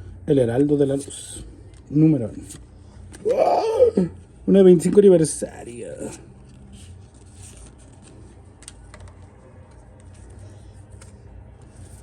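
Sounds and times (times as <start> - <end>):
low steady hum: 0.0 - 12.0
cards rubbing by hand: 5.9 - 12.0.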